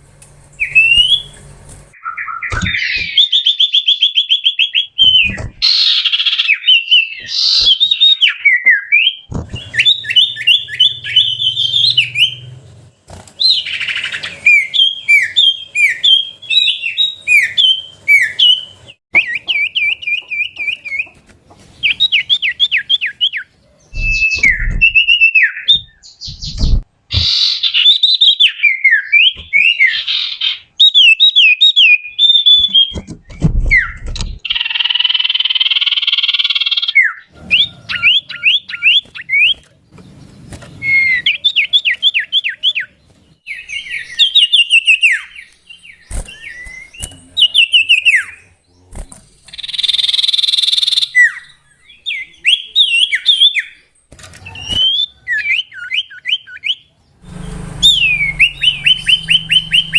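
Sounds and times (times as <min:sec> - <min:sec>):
bird whistling and trilling: 0:00.6 - 0:01.4, 0:02.0 - 0:12.5, 0:13.4 - 0:21.1, 0:21.8 - 0:39.6, 0:40.7 - 0:42.9, 0:43.5 - 0:48.5, 0:49.5 - 0:53.8, 0:54.5 - 0:56.9, 0:57.8 - 0:59.9
low thumps: 0:23.9 - 0:25.2, 0:25.8 - 0:26.9.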